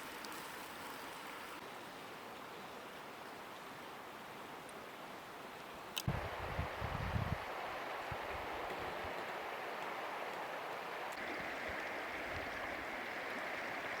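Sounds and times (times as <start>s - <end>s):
river water rushing: 5.4s - 14.0s.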